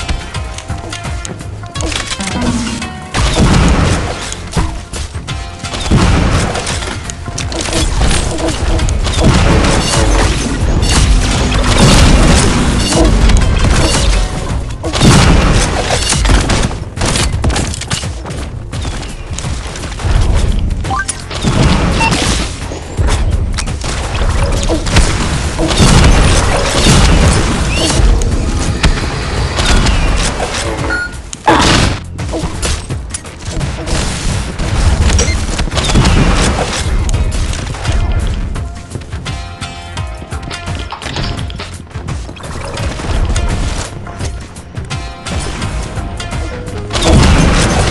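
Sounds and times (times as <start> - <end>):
music playing: 37.9 - 47.9.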